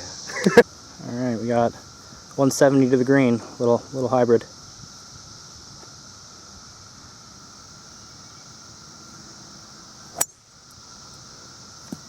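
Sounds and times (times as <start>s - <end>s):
high insect chirring: 0.0s - 12.0s
golf club striking ball: 10.1s - 10.4s.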